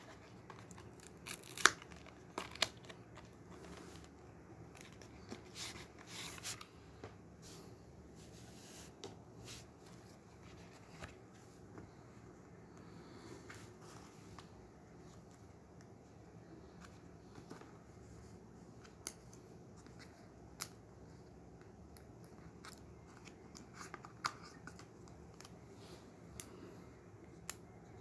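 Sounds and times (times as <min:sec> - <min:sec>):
wrapping rustling and tearing: 0:00.0 - 0:04.1.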